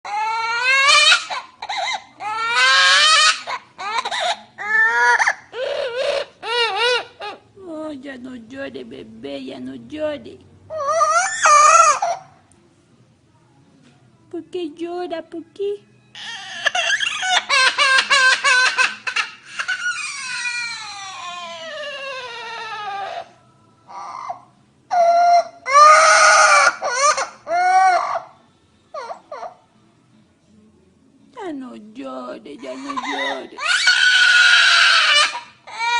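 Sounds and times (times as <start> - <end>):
baby crying: 0.0 - 7.5, 10.7 - 12.4, 16.2 - 29.6, 32.6 - 35.9.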